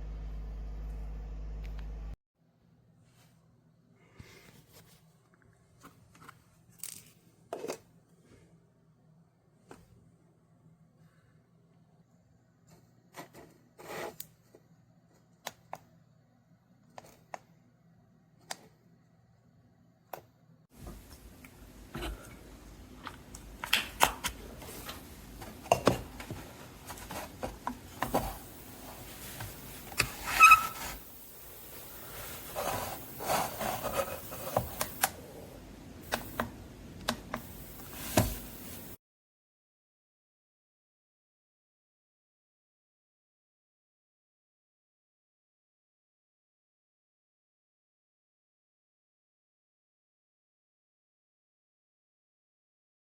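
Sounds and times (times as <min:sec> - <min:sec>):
faint low hum: 0:00.0 - 0:04.4.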